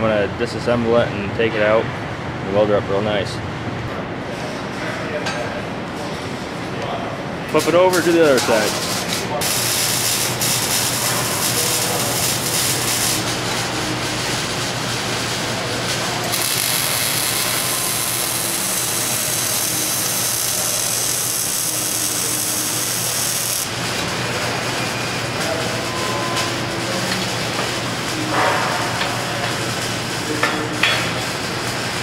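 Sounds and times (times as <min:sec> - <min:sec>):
welding arc noise: 0:07.5 - 0:25.9.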